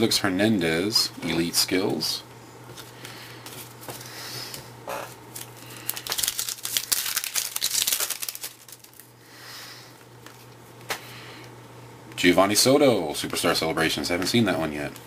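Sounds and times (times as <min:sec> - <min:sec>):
plastic wrapper crinkling and tearing: 0:05.3 - 0:09.1.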